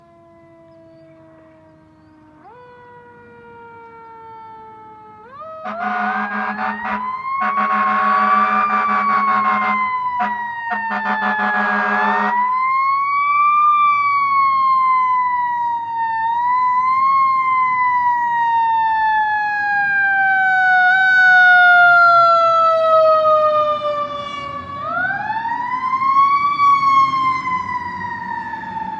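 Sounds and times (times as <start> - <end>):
fire truck siren wailing: 0.0 - 28.9
horn blasts: 5.6 - 12.4.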